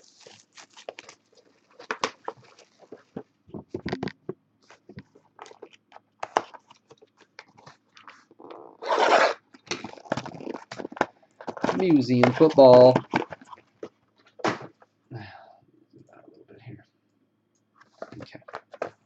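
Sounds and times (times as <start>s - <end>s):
plastic wrap ripping: 0.0s - 3.2s
plastic wrap crinkling: 0.0s - 8.4s.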